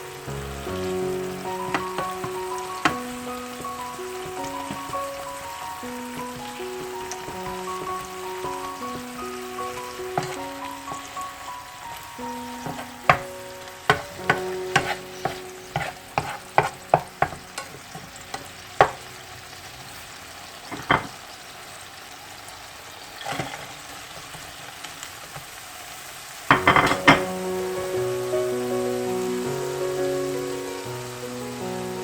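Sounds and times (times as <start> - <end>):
food sizzling in a pan: 0.0 - 32.0
utensil clacking against pan: 1.6 - 5.0, 10.2 - 11.0, 12.6 - 13.3, 13.9 - 19.0, 20.7 - 21.2, 26.5 - 27.3.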